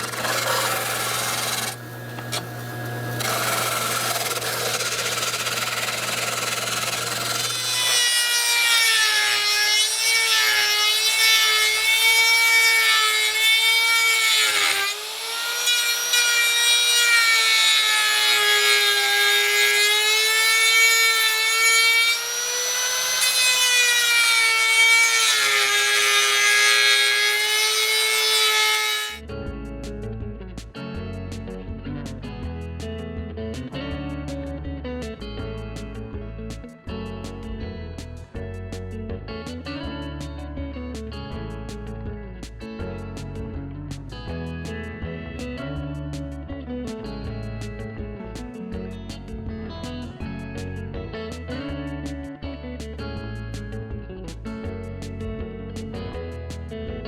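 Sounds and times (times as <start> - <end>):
electric motor whining: 0.0 - 8.4.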